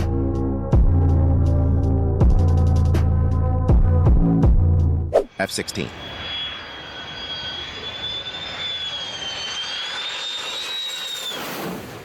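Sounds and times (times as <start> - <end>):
fighter jet flying over: 5.2 - 12.0.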